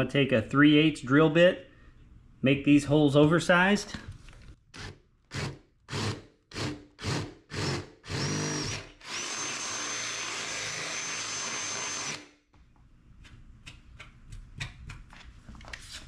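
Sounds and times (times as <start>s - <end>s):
power drill drilling sheet metal: 4.8s - 12.3s.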